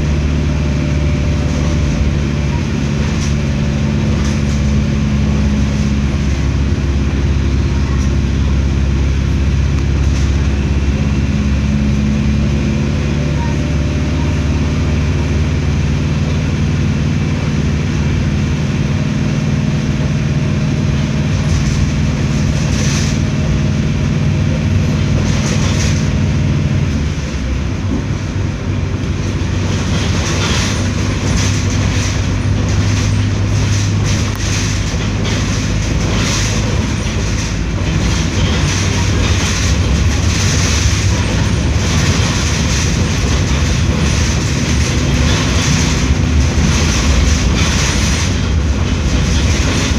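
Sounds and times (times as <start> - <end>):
bus diesel engine droning: 0.0 - 49.9
clattering knocks and rattles: 29.1 - 49.9.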